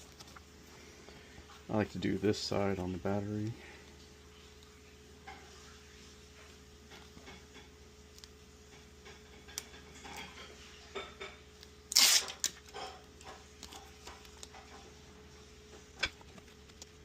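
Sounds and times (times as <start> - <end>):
velcro pulled apart: 11.9 - 12.6.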